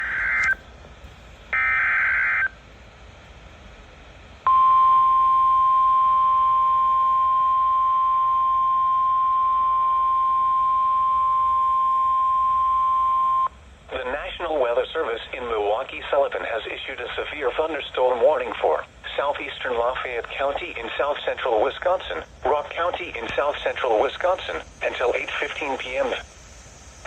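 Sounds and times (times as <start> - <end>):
steady warning alarm tone: 0.0 - 0.6, 1.5 - 2.6, 4.5 - 13.6.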